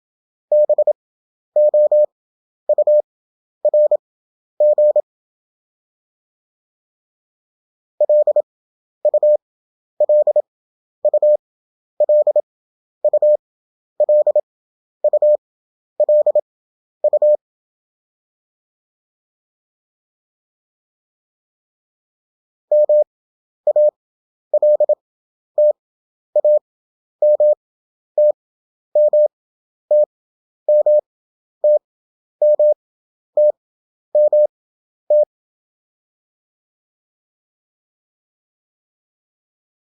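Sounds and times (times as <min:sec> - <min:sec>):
morse code beeps: 0:00.5 - 0:01.0, 0:01.6 - 0:02.1, 0:02.7 - 0:03.1, 0:03.7 - 0:04.0, 0:04.6 - 0:05.0, 0:08.0 - 0:08.5, 0:09.1 - 0:09.4, 0:10.0 - 0:10.4, 0:11.0 - 0:11.4, 0:12.0 - 0:12.4, 0:13.0 - 0:13.4, 0:14.0 - 0:14.4, 0:15.0 - 0:15.4, 0:16.0 - 0:16.4, 0:17.0 - 0:17.4, 0:22.7 - 0:23.1, 0:23.7 - 0:24.0, 0:24.6 - 0:25.0, 0:26.4 - 0:26.6, 0:27.2 - 0:27.6, 0:29.0 - 0:29.3, 0:30.7 - 0:31.0, 0:31.6 - 0:31.8, 0:32.4 - 0:32.8, 0:33.4 - 0:33.6, 0:34.2 - 0:34.5.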